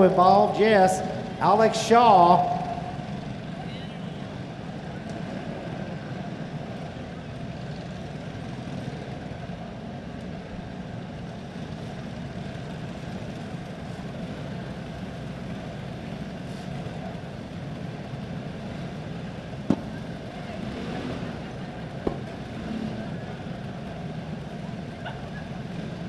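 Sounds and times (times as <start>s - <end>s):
kart engines running steadily: 0.0s - 26.0s.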